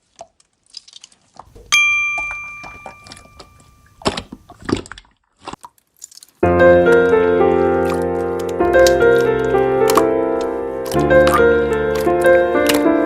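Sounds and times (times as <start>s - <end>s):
piano music: 1.6s - 4.0s, 6.4s - 13.0s
bright bell-like ding: 1.7s - 3.8s.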